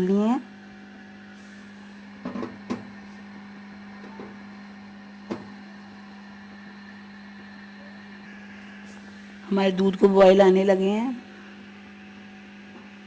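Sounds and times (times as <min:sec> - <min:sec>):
low electrical hum: 0:00.0 - 0:13.0.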